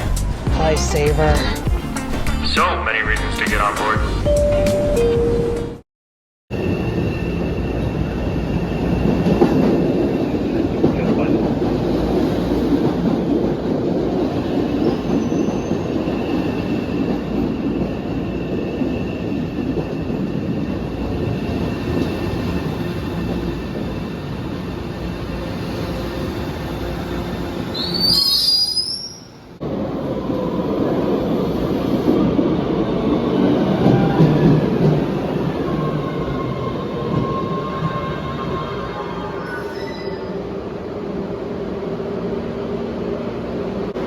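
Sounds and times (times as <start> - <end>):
train rumbling on track: 6.5 - 44.0
high wheel squeal: 27.7 - 29.4, 35.6 - 40.5.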